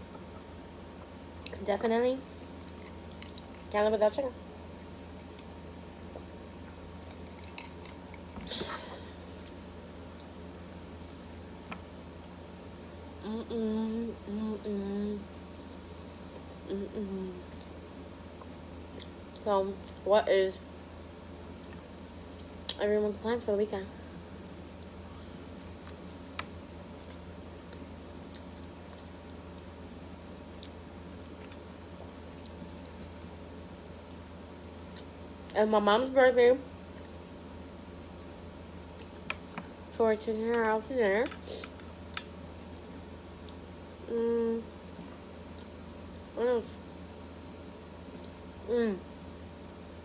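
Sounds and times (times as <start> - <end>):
steady low hum: 0.0 - 50.0
person chewing: 6.1 - 8.4.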